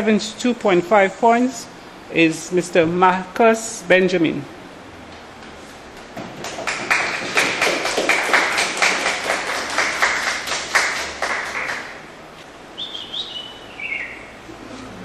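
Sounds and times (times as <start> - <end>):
audience clapping: 6.0 - 12.1.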